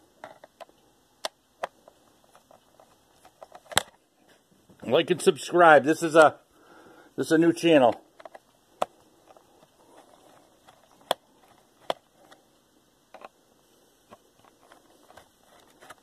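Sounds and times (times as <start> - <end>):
screwdriver ticks and scrapes: 14.1 - 16.0.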